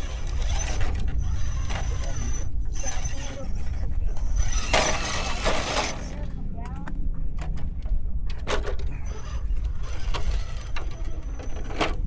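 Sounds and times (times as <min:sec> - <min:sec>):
electric motor whining: 0:00.0 - 0:06.2, 0:08.9 - 0:12.0
scraping noises: 0:00.0 - 0:06.3, 0:08.8 - 0:11.9
steady low rumble: 0:00.0 - 0:12.0.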